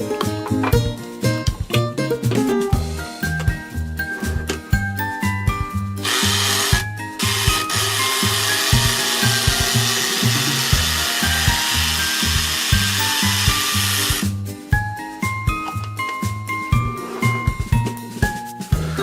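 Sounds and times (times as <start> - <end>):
children's background music: 0.0 - 19.0
small toy motor whirring: 6.0 - 14.3.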